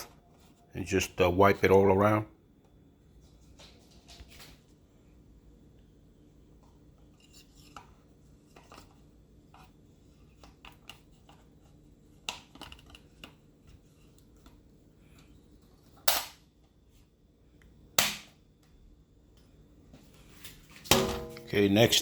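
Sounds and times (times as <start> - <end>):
sharp plastic snap: 16.1 - 16.4, 18.0 - 18.4.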